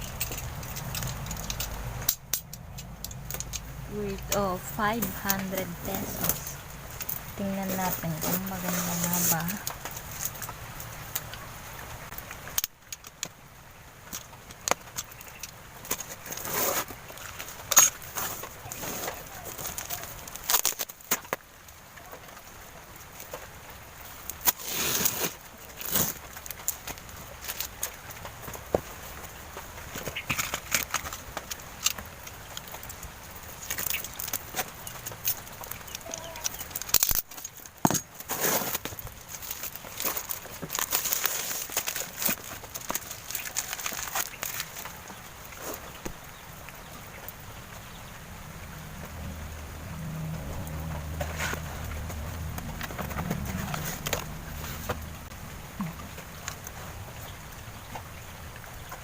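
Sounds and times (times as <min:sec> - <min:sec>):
packaging rustling: 0:24.3 - 0:46.2.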